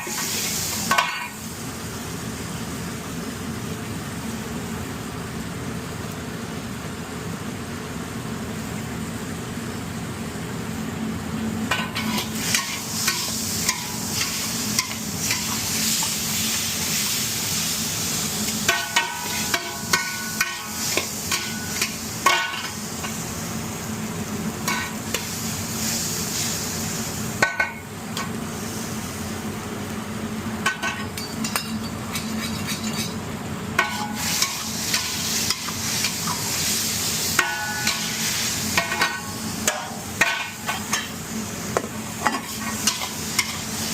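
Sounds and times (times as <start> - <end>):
food sizzling in a pan: 0.0 - 4.6, 11.7 - 43.9
metal utensil scraping a pan: 31.5 - 33.2.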